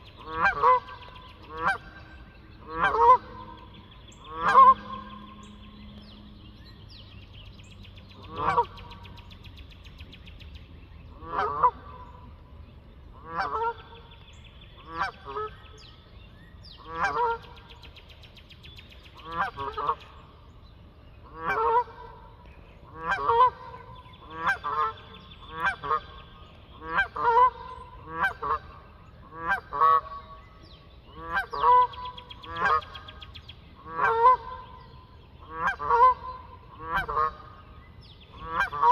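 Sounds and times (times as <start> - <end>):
geese honking: 0.2 - 5.6, 8.2 - 9.0, 11.2 - 12.2, 13.2 - 14.1, 14.8 - 15.6, 16.8 - 17.6, 19.2 - 20.2, 21.3 - 22.3, 22.9 - 30.4, 31.2 - 33.2, 33.8 - 38.9.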